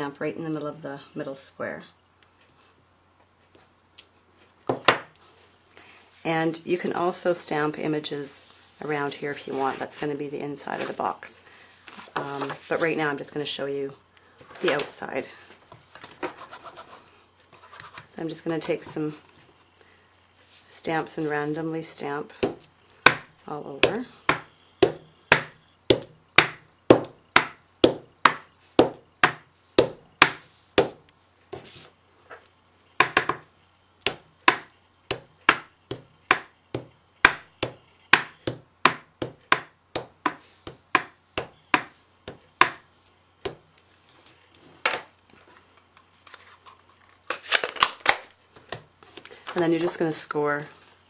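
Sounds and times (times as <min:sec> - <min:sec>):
rubber stamp tapping on cardstock: 0:24.3 - 0:31.0, 0:34.0 - 0:40.4.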